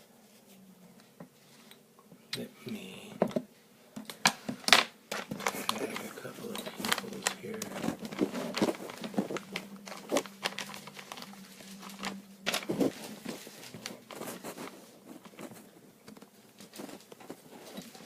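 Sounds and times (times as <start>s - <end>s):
faint steady hum: 0.0s - 18.0s
light clicks and handling noises: 4.0s - 18.0s.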